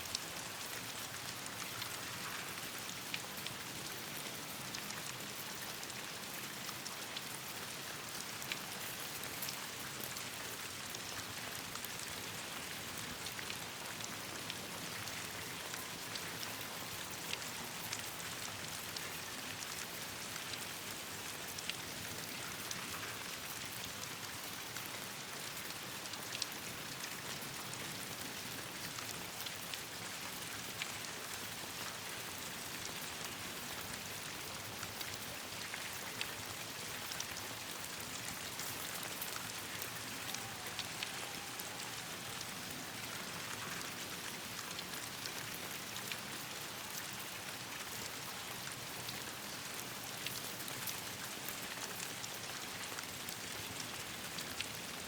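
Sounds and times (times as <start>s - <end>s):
rain on leaves: 0.0s - 55.0s.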